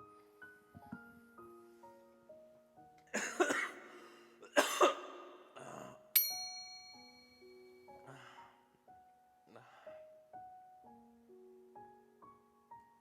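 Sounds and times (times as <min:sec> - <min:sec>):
soft keyboard music: 0:00.0 - 0:13.0
person choking and coughing: 0:03.1 - 0:03.8, 0:04.4 - 0:06.0
bright chime: 0:06.2 - 0:07.9.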